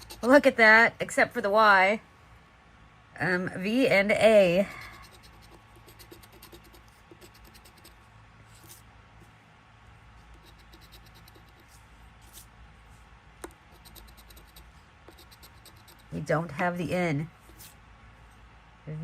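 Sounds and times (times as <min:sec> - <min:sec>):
scratching lottery ticket coating: 0:04.6 - 0:08.0, 0:10.2 - 0:12.5, 0:13.6 - 0:16.8.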